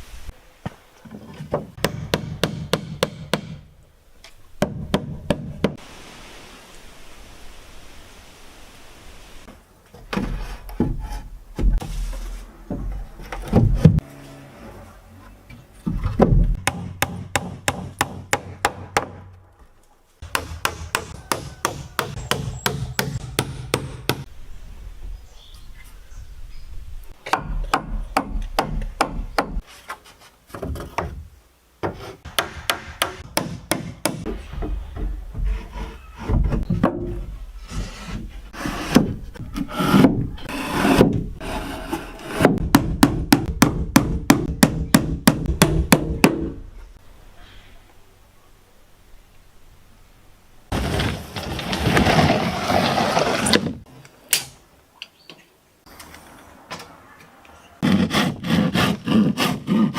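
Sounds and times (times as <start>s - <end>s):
hand tool scraping wood: 34.0s - 36.8s, 37.6s - 42.6s, 50.7s - 53.8s, 57.8s - 59.9s.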